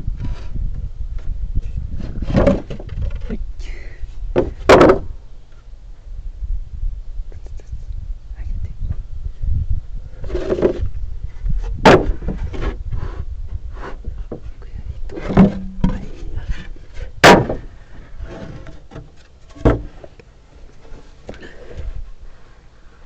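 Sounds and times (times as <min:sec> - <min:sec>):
handling of wood: 0:00.2 - 0:03.4, 0:04.2 - 0:05.2, 0:10.2 - 0:23.0
sharp wooden knocks: 0:04.4 - 0:05.1, 0:11.8 - 0:12.4, 0:15.2 - 0:16.0, 0:17.2 - 0:17.7, 0:18.9 - 0:19.9.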